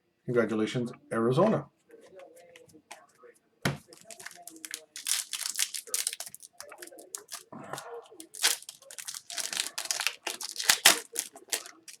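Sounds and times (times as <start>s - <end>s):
foil wrapper tearing and crinkling: 3.9s - 7.5s, 8.1s - 12.0s.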